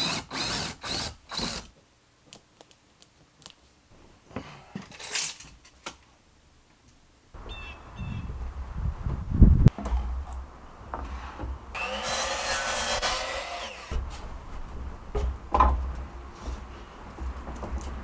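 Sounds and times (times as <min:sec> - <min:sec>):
power saw cutting wood: 0:00.0 - 0:01.6, 0:11.8 - 0:13.9.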